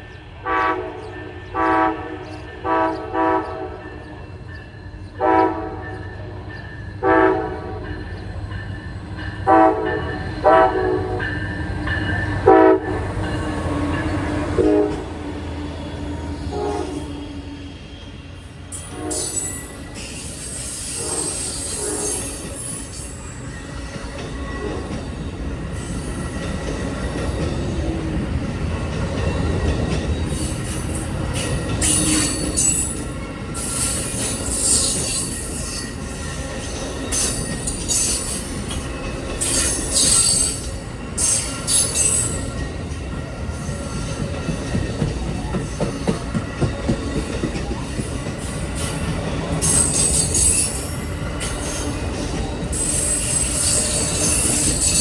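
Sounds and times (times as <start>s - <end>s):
train wheels rumbling on rail: 0.0s - 55.0s
high-pitched wheel squeal: 39.4s - 42.5s.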